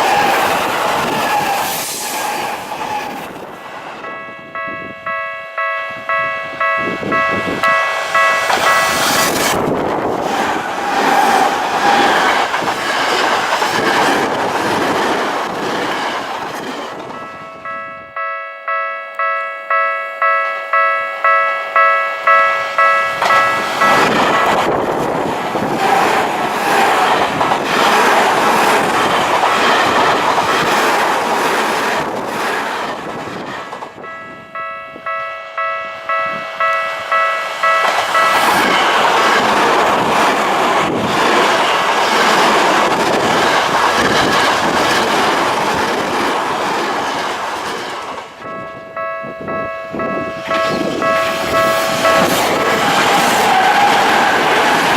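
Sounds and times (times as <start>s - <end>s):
train passing over rails: 0.0s - 54.9s
level crossing warning bell: 4.0s - 10.8s, 17.0s - 25.8s, 33.9s - 42.4s, 48.4s - 54.3s.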